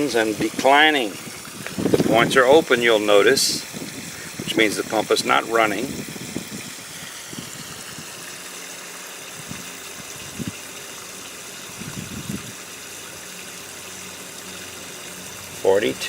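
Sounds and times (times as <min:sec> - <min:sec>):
water running through valve: 0:00.0 - 0:16.0.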